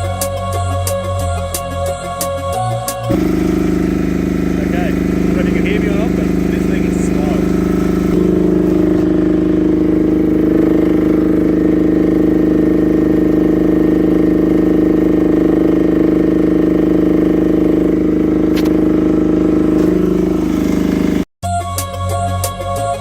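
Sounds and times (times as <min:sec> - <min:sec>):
excavator engine under load: 0:03.1 - 0:21.3.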